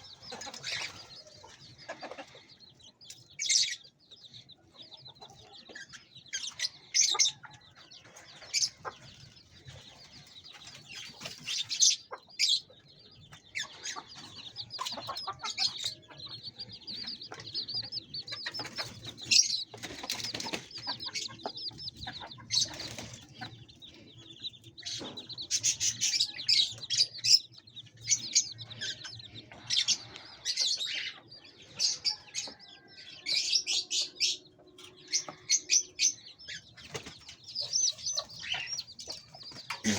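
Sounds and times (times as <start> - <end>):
small parrots chirping: 0.0 - 2.4, 5.4 - 7.6, 10.4 - 32.8, 35.0 - 39.9.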